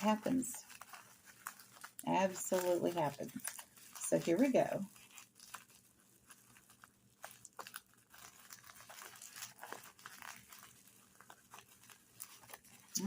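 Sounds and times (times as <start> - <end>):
packaging crinkling and rustling: 0.0 - 13.0.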